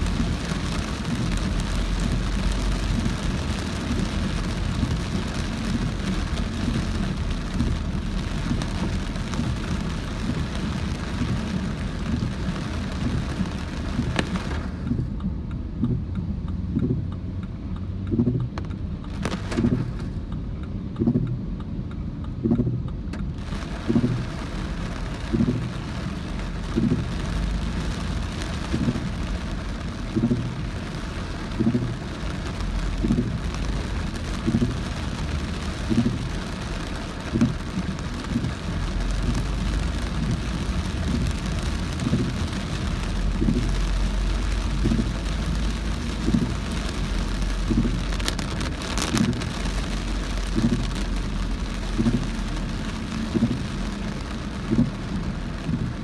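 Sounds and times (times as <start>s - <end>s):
heavy rain drumming on car: 0.0s - 15.3s, 18.3s - 20.6s, 22.6s - 56.0s
low road rumble: 0.0s - 56.0s
soft low thuds: 47.5s - 56.0s.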